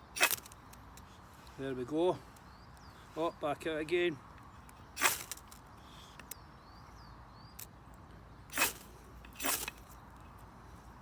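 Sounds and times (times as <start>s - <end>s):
knife scraping fire steel rod: 0.1s - 1.2s, 5.0s - 5.4s, 8.5s - 10.0s.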